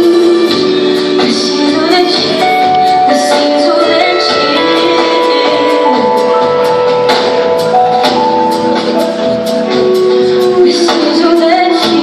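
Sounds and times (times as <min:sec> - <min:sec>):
worship band playing slow song: 0:00.0 - 0:12.0.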